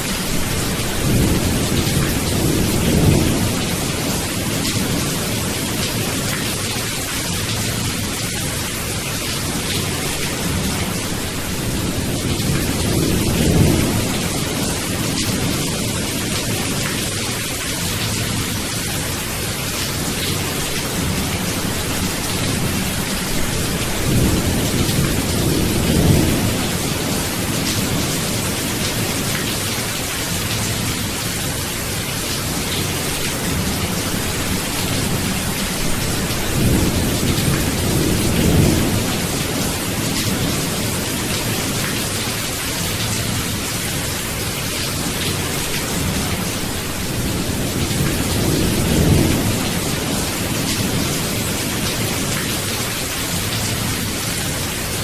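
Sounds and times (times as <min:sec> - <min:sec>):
thunder rumbling: 0:20.9 - 0:29.3.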